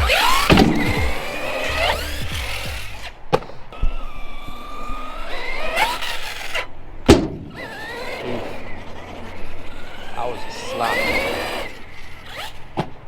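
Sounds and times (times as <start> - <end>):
toy truck knocking on ground: 0.0 - 3.6
electric motor whining and revving: 0.0 - 13.0.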